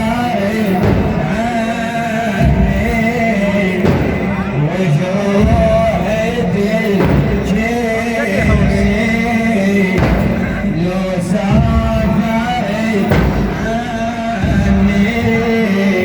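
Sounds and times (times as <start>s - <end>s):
heavy low accompaniment: 0.0s - 16.0s
man singing religious chant: 0.0s - 16.0s.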